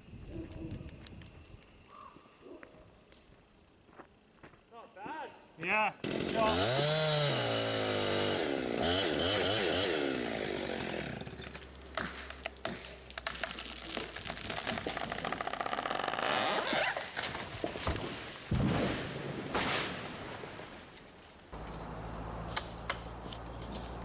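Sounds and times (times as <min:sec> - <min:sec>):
chainsaw revving: 0:06.0 - 0:12.2, 0:15.4 - 0:17.0, 0:21.6 - 0:24.0
wood cracking and knocking: 0:10.7 - 0:18.8, 0:21.6 - 0:24.0.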